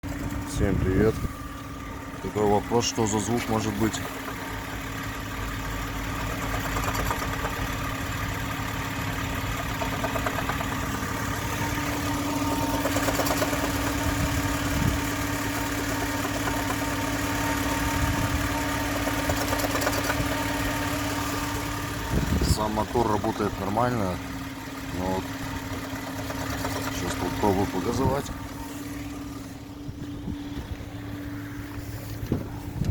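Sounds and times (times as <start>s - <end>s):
car engine idling: 0.0s - 32.9s
knocking from engine bay: 6.3s - 7.7s, 9.6s - 11.0s, 15.4s - 17.0s.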